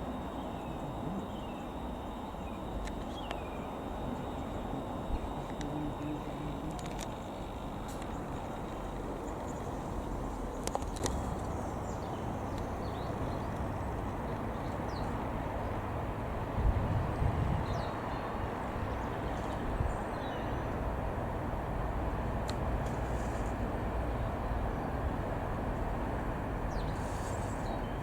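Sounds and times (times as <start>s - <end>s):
steady low rumble: 0.0s - 28.0s
faint bird chirps: 0.3s - 6.6s
low buffet on microphone: 0.6s - 9.1s.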